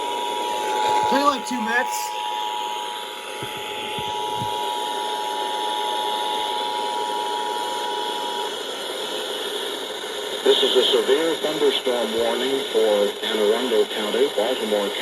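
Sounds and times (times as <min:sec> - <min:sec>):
radio static hiss: 0:00.4 - 0:02.3
two-tone attention signal: 0:00.4 - 0:02.4.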